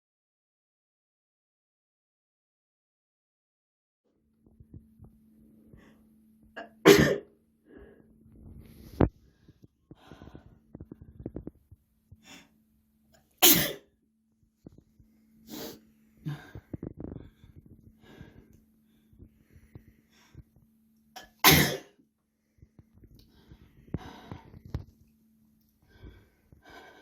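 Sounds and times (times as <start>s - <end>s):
quiet breaths: 4.4s - 6.6s, 7.5s - 13.4s, 14.5s - 21.1s, 22.2s - 27.0s
person sneezing: 13.4s - 13.8s, 21.2s - 21.9s.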